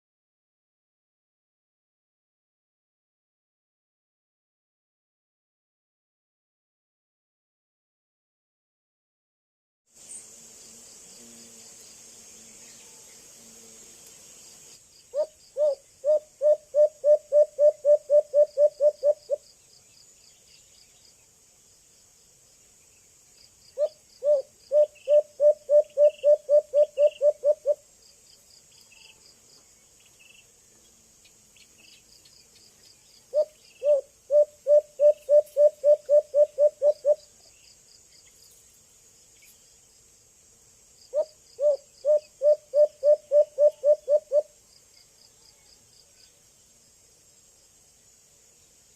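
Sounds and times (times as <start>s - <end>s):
insects chirping: 10.0s - 48.9s
dove hooting: 15.1s - 19.4s, 23.8s - 27.8s, 33.3s - 37.3s, 41.1s - 44.6s.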